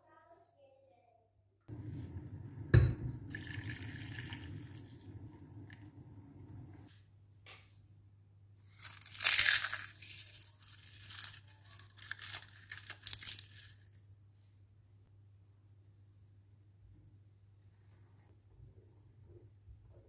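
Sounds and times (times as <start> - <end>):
dry material tearing and crinkling: 8.7 - 14.0.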